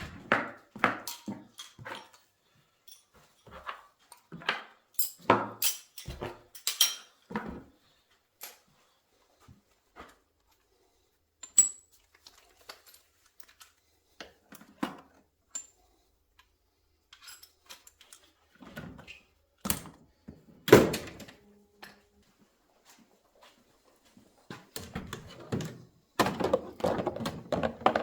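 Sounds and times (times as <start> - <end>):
tools clinking on a bench: 0.8 - 2.3, 2.9 - 7.2, 11.4 - 13.7, 17.1 - 18.3.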